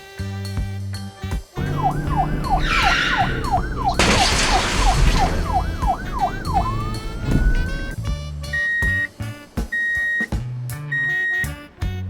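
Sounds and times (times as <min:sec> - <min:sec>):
police siren: 0:01.6 - 0:09.1.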